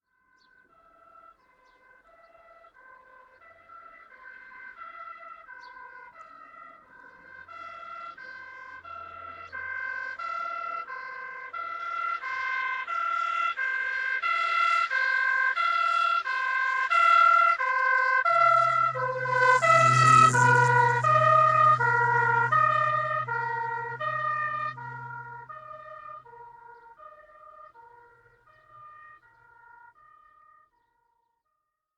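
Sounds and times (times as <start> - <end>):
two-tone police siren: 0.1 - 31.1
road noise rush: 6.1 - 29.1.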